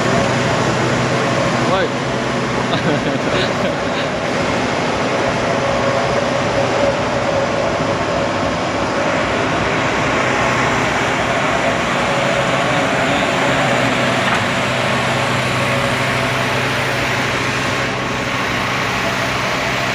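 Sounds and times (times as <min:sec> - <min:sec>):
diesel machinery engine hum: 0:00.0 - 0:19.9.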